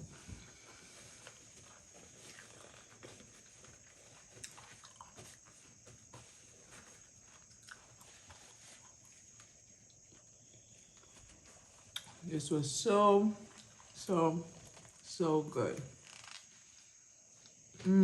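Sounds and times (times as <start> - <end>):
crunching of tortilla chips: 1.6 - 5.5.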